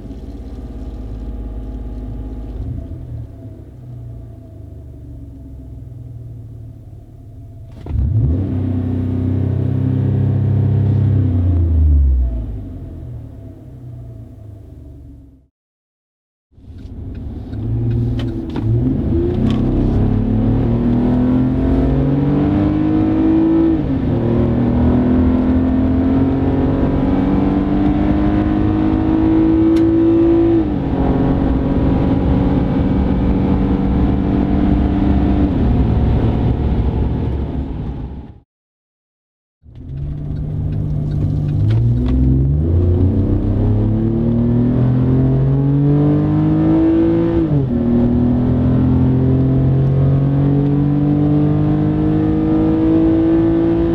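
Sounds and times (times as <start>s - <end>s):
car engine accelerating hard: 7.7s - 15.0s, 17.1s - 38.2s, 39.7s - 53.9s.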